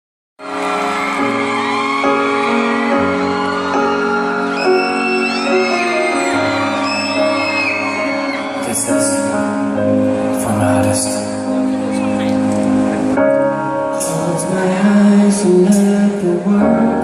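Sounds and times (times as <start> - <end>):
instrumental pop ballad: 0.4 - 17.0
audience member whooping: 0.5 - 9.2.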